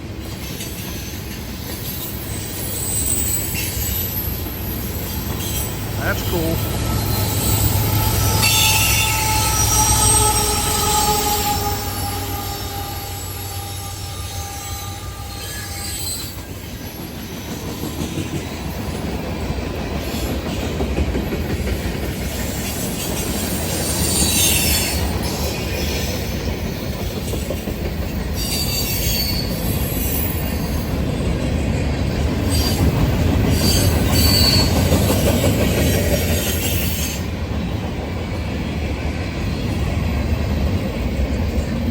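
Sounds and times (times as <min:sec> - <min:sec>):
train cars rumbling and clattering: 0:00.0 - 0:41.9
wheels squealing against rail: 0:00.2 - 0:18.0, 0:22.5 - 0:26.5, 0:28.2 - 0:30.9, 0:32.4 - 0:37.3.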